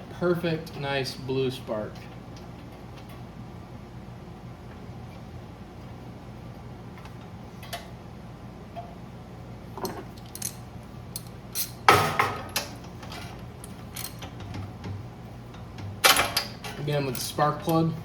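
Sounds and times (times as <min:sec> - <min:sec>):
steady low hum: 0:00.0 - 0:18.0
metal tools clicking and clinking: 0:09.8 - 0:11.8, 0:12.4 - 0:14.4, 0:16.1 - 0:17.9.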